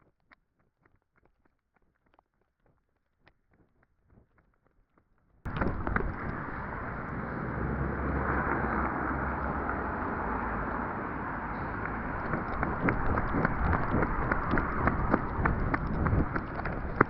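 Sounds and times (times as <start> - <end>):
wind rumbling on microphone: 5.5 - 17.0.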